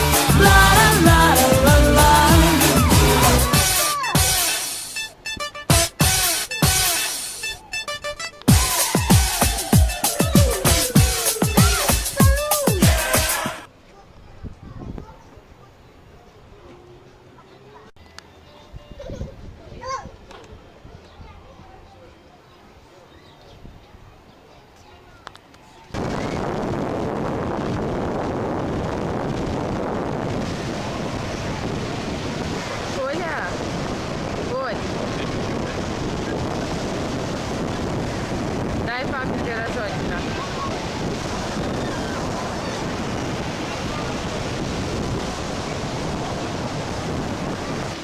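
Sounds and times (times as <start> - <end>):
sea surf: 0.0 - 5.1, 8.5 - 13.7, 26.0 - 48.0
wind buffeting microphone: 14.2 - 15.2, 26.0 - 48.0.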